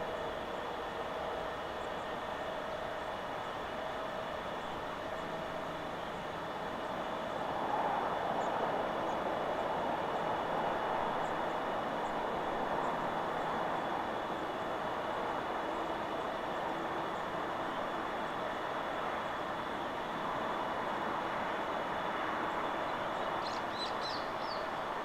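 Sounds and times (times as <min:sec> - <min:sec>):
wind rushing through trees: 0:02.4 - 0:25.0
faint high bird chirps: 0:23.4 - 0:24.8.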